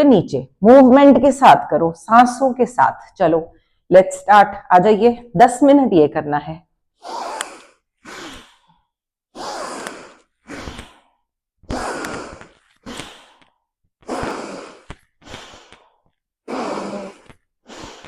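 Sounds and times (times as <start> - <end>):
woman breathing audibly: 3.5 - 3.9, 7.0 - 18.0.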